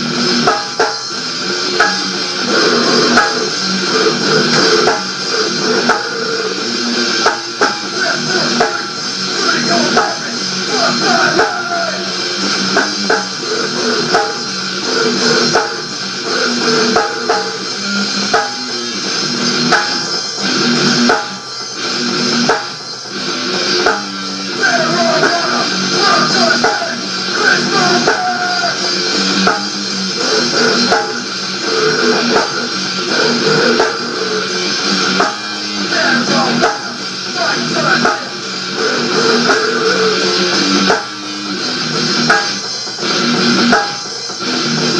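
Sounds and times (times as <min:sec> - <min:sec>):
drum kit beat: 0:00.0 - 0:44.9
rock band playing: 0:00.0 - 0:44.9.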